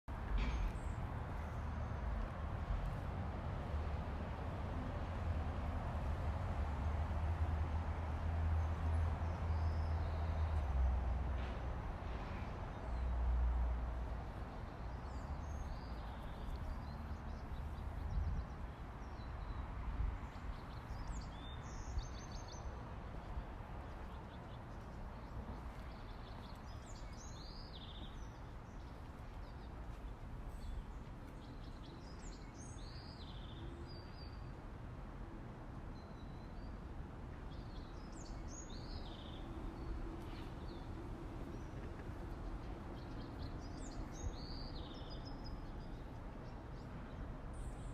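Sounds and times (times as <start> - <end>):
low city rumble: 0.1 - 47.9
small birds chirping: 20.3 - 34.5, 37.5 - 46.9.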